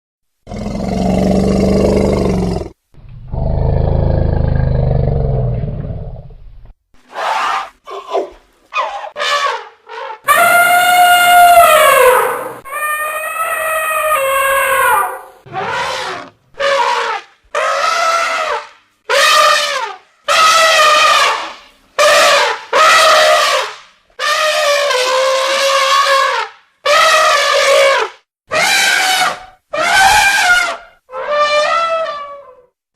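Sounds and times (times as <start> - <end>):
elephant roaring: 0.5 - 6.3
elephant trumpeting: 7.1 - 32.7.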